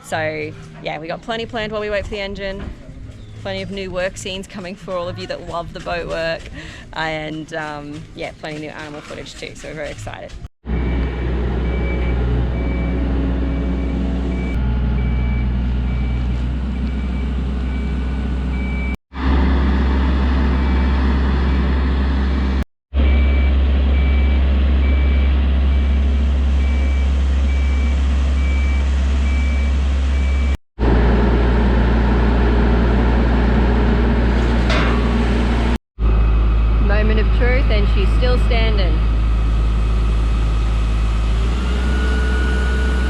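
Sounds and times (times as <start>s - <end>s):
diesel engine rumbling: 10.1s - 43.0s
reversing alarm beeping: 10.7s - 19.0s, 23.0s - 30.6s.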